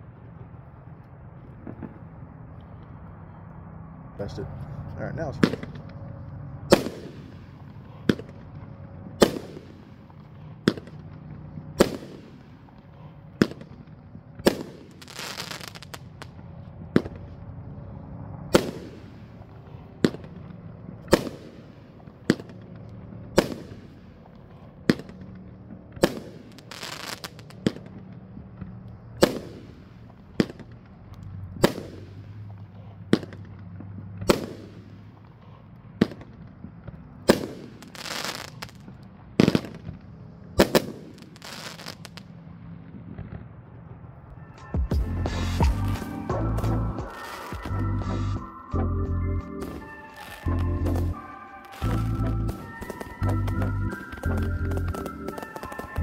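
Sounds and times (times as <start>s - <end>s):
firework bangs: 1.5s - 3.0s, 5.2s - 17.6s, 18.4s - 43.7s, 44.9s - 48.3s, 49.6s - 56.0s
firework crackling hiss: 14.5s - 16.4s, 26.0s - 27.8s, 37.3s - 38.9s, 40.6s - 42.2s, 47.0s - 48.2s, 49.7s - 56.0s.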